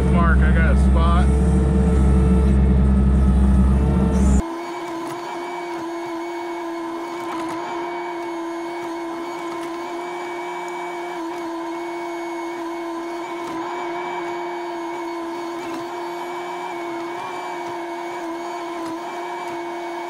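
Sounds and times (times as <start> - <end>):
low engine rumble: 0.0 - 4.4
machine whine: 0.0 - 20.0.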